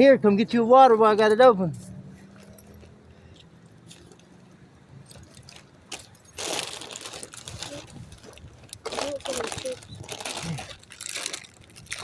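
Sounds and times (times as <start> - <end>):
plastic bottle crinkling: 6.4 - 12.0.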